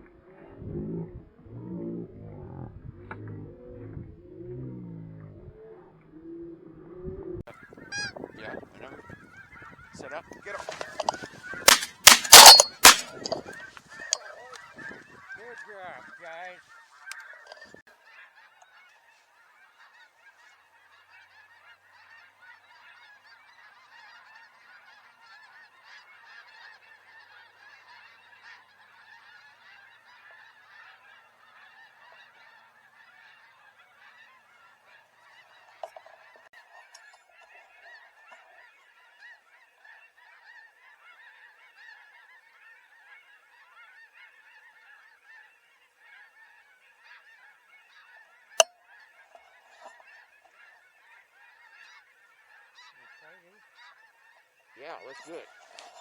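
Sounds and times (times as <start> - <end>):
snow geese honking: 10.5 - 13.5, 49.0 - 56.0.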